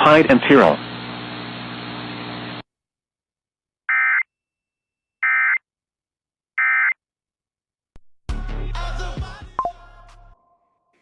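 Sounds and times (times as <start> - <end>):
radio programme audio: 0.0 - 2.6.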